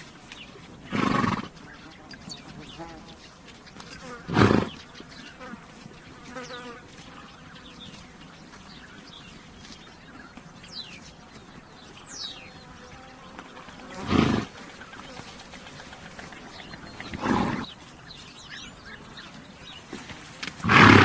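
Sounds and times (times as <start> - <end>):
small birds chirping: 0.0 - 21.0
horse snorting: 0.8 - 1.8, 4.0 - 4.8, 13.7 - 17.8, 20.5 - 21.0
flies buzzing: 0.9 - 9.2, 11.1 - 18.1.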